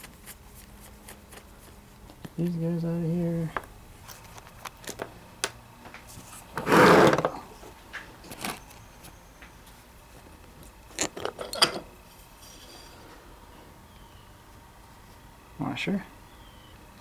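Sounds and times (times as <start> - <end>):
metal scraping: 6.5 - 7.4
metal parts clicking and clinking: 10.9 - 11.9.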